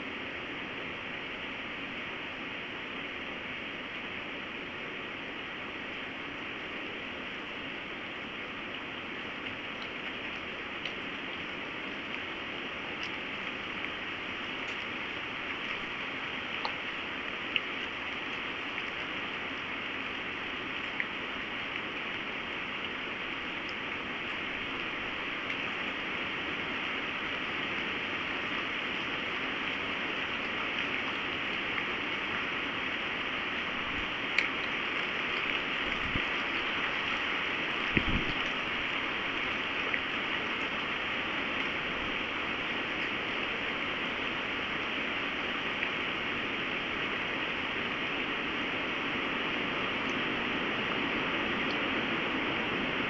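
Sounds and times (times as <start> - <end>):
faint ticks: 16.6 - 19.1, 34.3 - 37.2.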